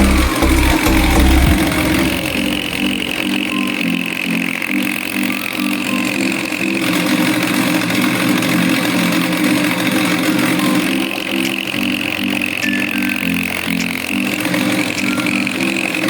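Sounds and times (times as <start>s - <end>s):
machine hum pulsing: 0.0s - 4.2s
high machine whine: 0.0s - 16.0s.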